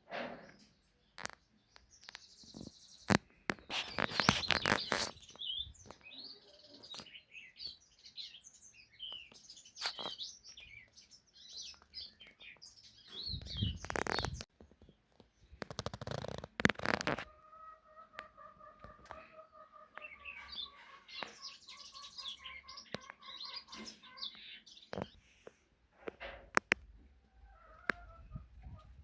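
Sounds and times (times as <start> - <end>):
small birds chirping: 0.3 - 29.0.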